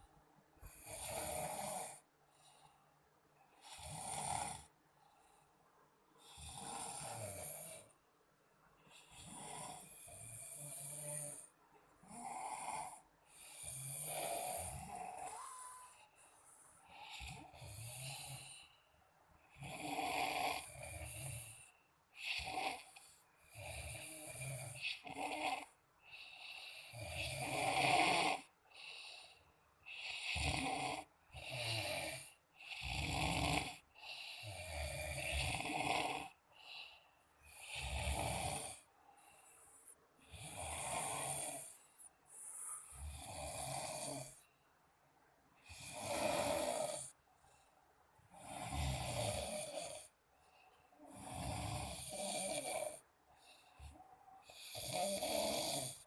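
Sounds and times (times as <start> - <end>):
people snoring: 6.3 - 7.9, 9.0 - 16.0, 16.9 - 18.7, 19.5 - 39.4, 45.7 - 47.2, 48.3 - 50.1, 51.0 - 56.0.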